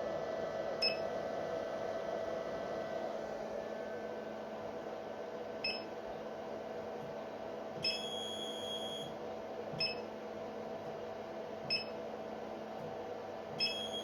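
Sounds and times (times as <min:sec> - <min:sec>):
steady low hum: 0:00.0 - 0:14.0
laser tube electrical chirp: 0:07.8 - 0:09.1, 0:13.6 - 0:14.0.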